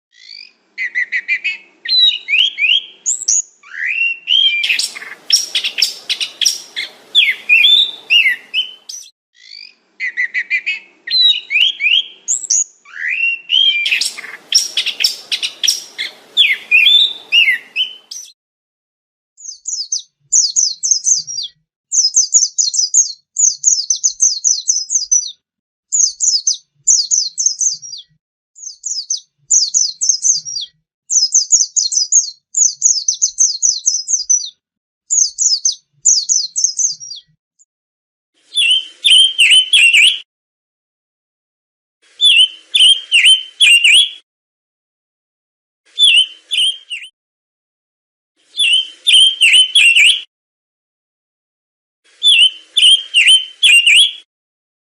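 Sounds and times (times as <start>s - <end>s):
songbird singing: 0.2s - 18.4s, 19.4s - 25.4s, 26.0s - 34.5s, 35.1s - 37.4s, 38.6s - 40.2s, 42.2s - 44.2s, 45.9s - 47.1s, 48.5s - 50.3s, 52.2s - 54.3s
rapid high bird trills: 3.7s - 9.1s, 13.6s - 18.2s.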